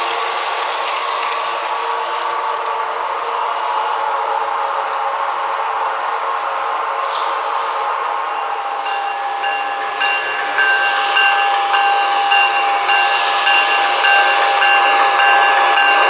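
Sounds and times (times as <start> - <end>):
electric locomotive hum: 0.0 - 16.0
locomotive bell ringing: 7.4 - 16.0.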